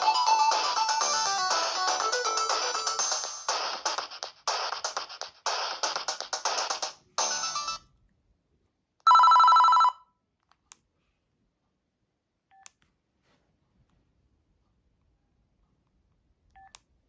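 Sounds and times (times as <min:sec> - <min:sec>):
trilling two-tone phone ring: 0:09.1 - 0:10.1.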